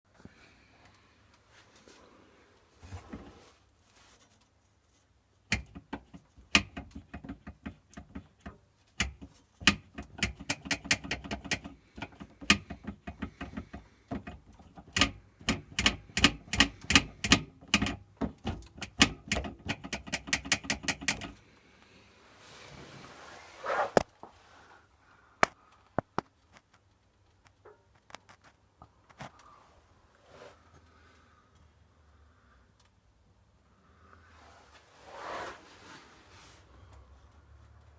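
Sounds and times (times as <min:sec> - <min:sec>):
handbrake cables rattling: 0:05.5 - 0:21.4.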